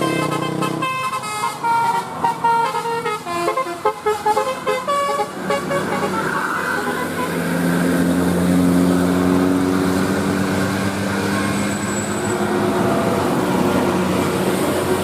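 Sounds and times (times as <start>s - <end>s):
multi-tone musical air horn: 0.0s - 7.4s
vehicle noise: 0.0s - 15.0s.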